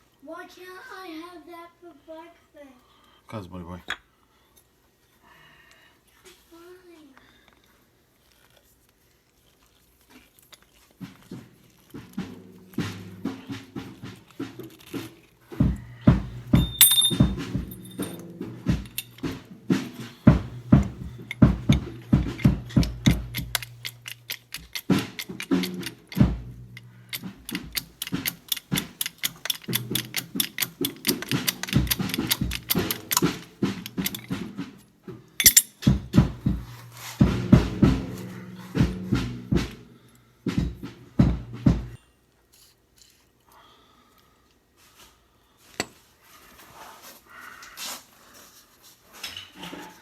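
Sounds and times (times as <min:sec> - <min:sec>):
music with steady beat and bass: 0:15.6 - 0:34.7, 0:35.9 - 0:42.0.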